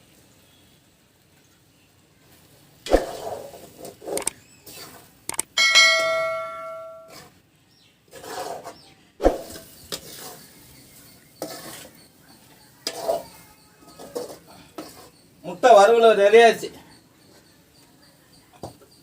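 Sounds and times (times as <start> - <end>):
ringing metal clang: 5.6 - 7.2
spoon knocking pan: 5.6 - 7.2
metal spoon scraping pan: 5.8 - 7.4, 8.1 - 15.4.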